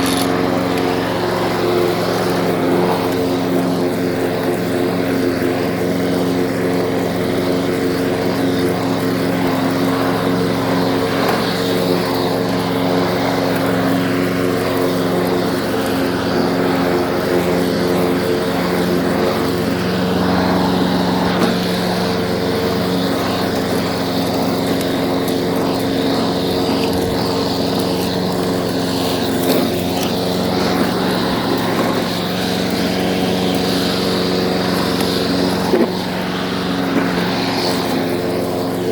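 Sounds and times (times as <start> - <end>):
lawn mower engine running: 0.0 - 38.9.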